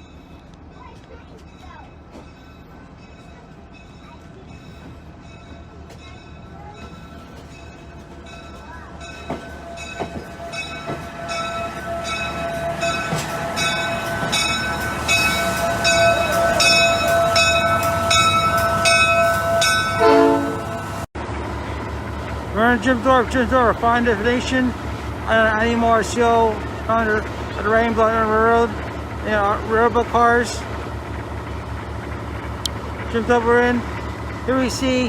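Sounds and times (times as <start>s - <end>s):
passenger train running: 0.0s - 35.0s
bell ringing: 1.5s - 21.1s
train horn note: 9.6s - 21.0s.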